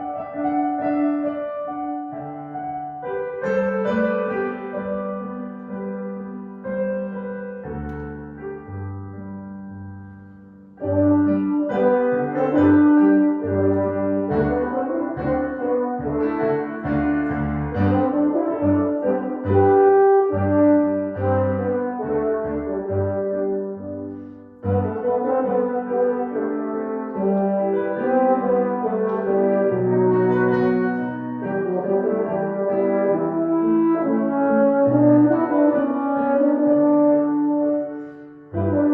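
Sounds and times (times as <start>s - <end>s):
horn-like chords with bass line: 10.8s - 38.9s.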